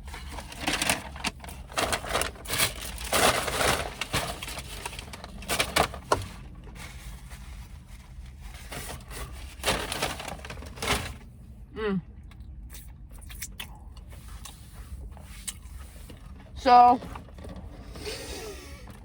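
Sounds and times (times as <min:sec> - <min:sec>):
chewing and crunching food: 0:12.0 - 0:19.0.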